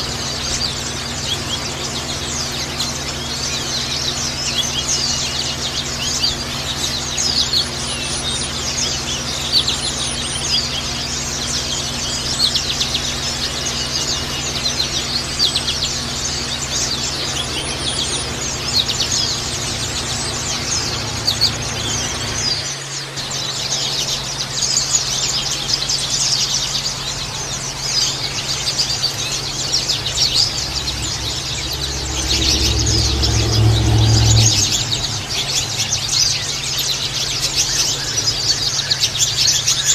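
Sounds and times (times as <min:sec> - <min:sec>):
birds singing rapid high chirps: 0:00.0 - 0:39.9
low hum: 0:27.7 - 0:37.9.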